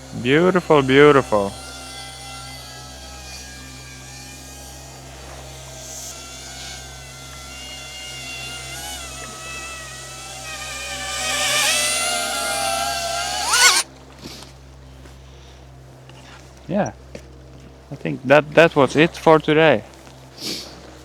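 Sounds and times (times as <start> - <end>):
drone propellers whining: 0.0 - 14.0.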